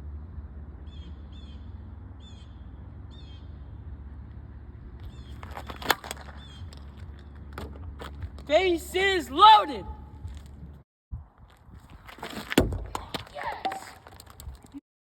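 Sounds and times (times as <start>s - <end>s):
low outdoor hum: 0.0s - 14.8s
clatter with sharp crack: 5.0s - 8.5s, 12.1s - 14.8s.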